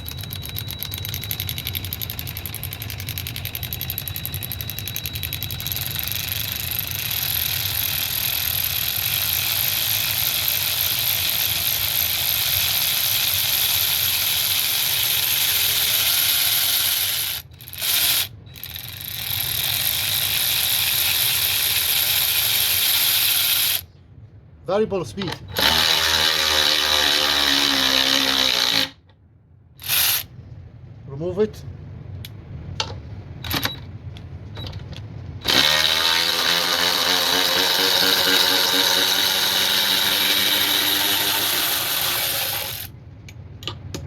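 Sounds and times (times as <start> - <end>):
cordless ratchet wrench motor running: 0.0 - 23.9, 25.5 - 29.0, 29.8 - 30.3, 35.4 - 42.9.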